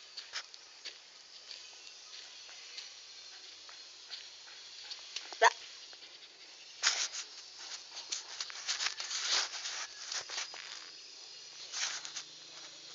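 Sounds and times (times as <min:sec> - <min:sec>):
scratchy rustling: 0:06.8 - 0:11.0.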